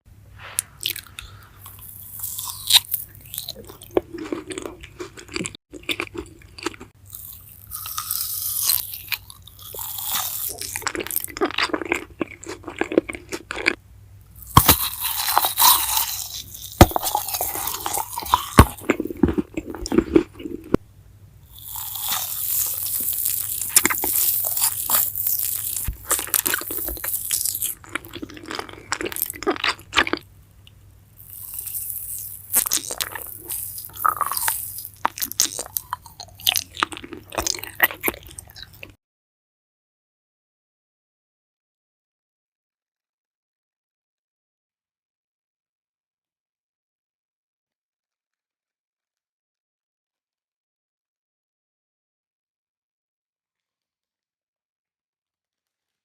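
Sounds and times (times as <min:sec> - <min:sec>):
chewing jelly candy: 0:00.6 - 0:13.8, 0:14.4 - 0:20.8, 0:21.5 - 0:30.3, 0:31.2 - 0:39.0.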